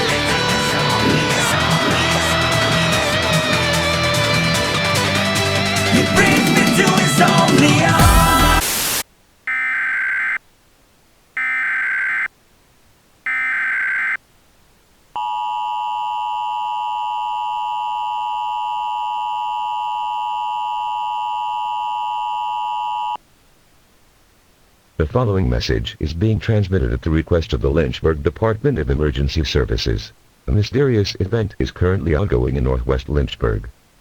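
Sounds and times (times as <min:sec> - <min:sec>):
data header bursts: 0:00.0 - 0:09.0
music track: 0:00.0 - 0:09.0.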